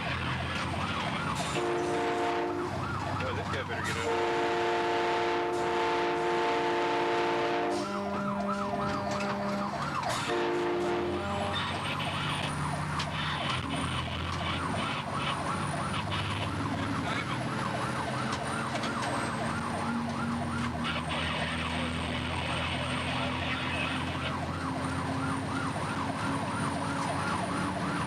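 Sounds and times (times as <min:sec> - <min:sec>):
siren yelp: 0:00.0 - 0:28.0
train horn blast: 0:01.5 - 0:02.8, 0:04.0 - 0:09.6, 0:10.2 - 0:11.8.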